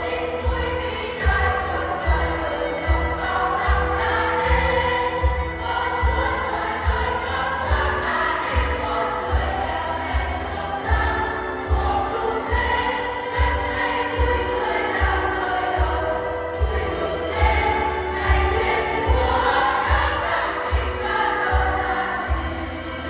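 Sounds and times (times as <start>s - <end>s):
backing music with low beat: 0.0s - 23.0s
church choir singing: 0.0s - 23.0s.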